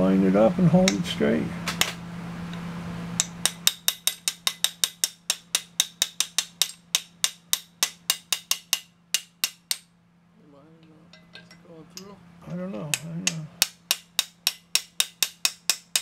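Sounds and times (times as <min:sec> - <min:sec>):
fast metallic clicking of hand tools: 0:03.2 - 0:09.9, 0:12.7 - 0:16.0.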